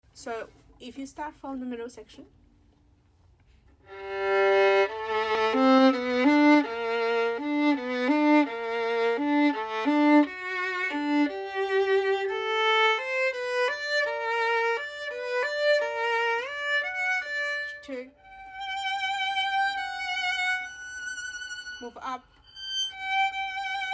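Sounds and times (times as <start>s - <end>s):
solo violin playing: 3.8s - 23.9s.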